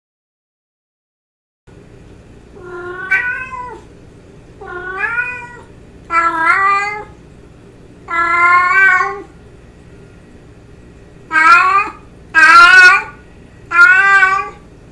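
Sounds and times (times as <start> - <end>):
cat meowing: 2.6 - 3.9, 4.6 - 7.2, 8.1 - 9.4, 11.3 - 14.7.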